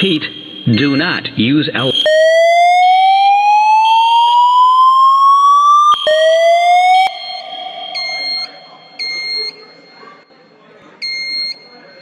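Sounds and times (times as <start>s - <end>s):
fire alarm whoop tone: 0.0s - 1.2s, 1.8s - 9.9s
voice messages: 0.0s - 2.1s, 6.0s - 10.0s
short high beep: 0.0s - 2.2s, 6.0s - 9.8s
higher steady alarm tone: 0.0s - 10.1s.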